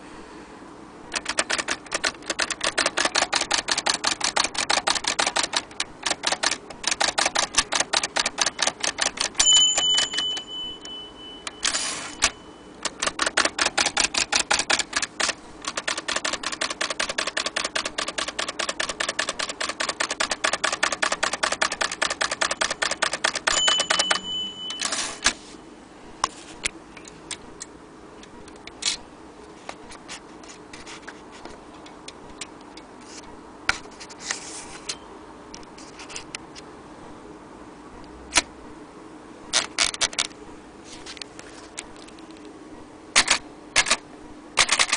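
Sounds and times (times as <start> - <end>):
typewriter key strikes: 1.1 - 25.3, 43.2 - 44.0, 44.6 - 44.9
typewriter carriage return: 1.1 - 25.4, 39.5 - 40.3, 43.2 - 44.0, 44.6 - 44.9
typewriter margin bell: 2.3 - 15.1, 15.7 - 25.3.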